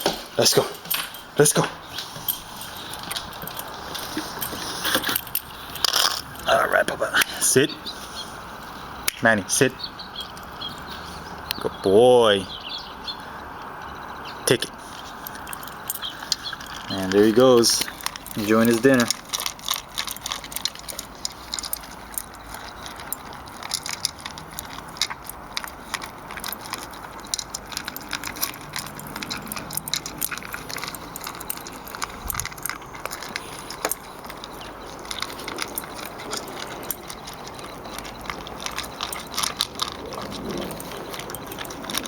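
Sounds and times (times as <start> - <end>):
dog chewing dry kibble: 0.0 - 11.7, 14.8 - 42.0.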